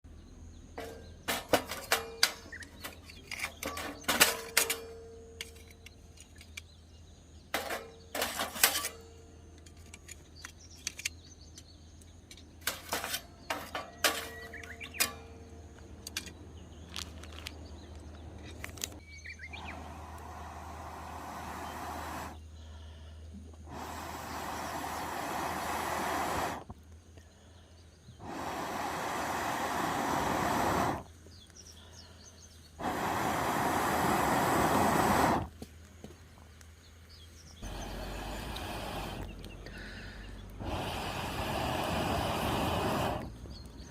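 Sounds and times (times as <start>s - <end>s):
metal cooking gear clinking: 0.8s - 6.7s, 7.6s - 11.2s
steady hiss: 16.8s - 43.9s.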